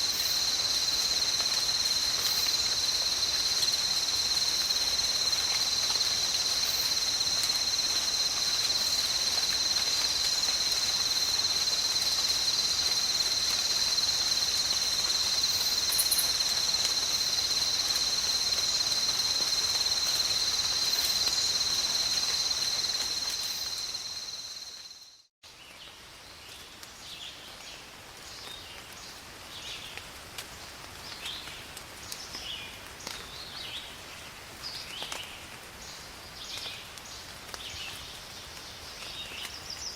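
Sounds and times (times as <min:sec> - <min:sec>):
shrill insect chorus: 0:00.0 - 0:25.3
steady rain: 0:00.0 - 0:39.9.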